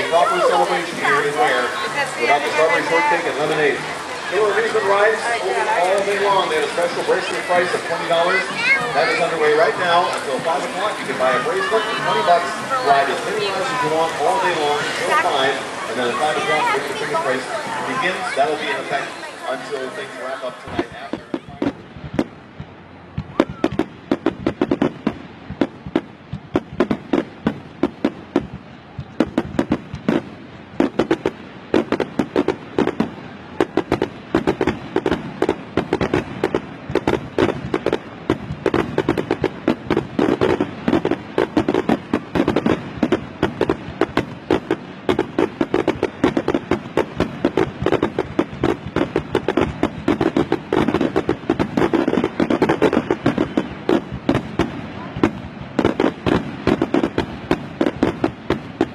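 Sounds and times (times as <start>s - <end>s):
fireworks bangs and crackling: 0.0s - 58.9s.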